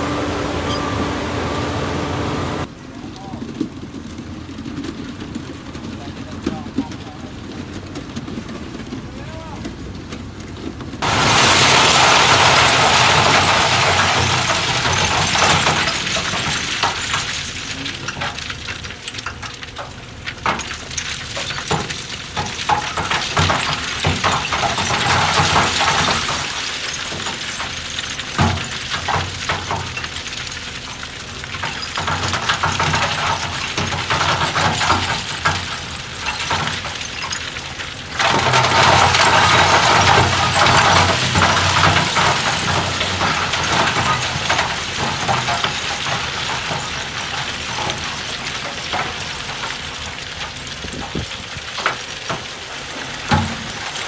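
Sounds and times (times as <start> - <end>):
soil and stones pouring: 0.0 - 2.7, 11.0 - 54.0
bulldozer diesel engine: 0.0 - 3.0, 7.1 - 51.1
low engine rumble: 0.0 - 3.4.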